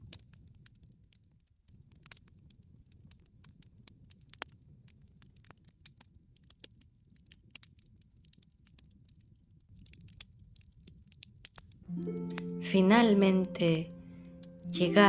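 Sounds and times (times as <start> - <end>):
campfire crackling and popping: 0.0 - 15.0.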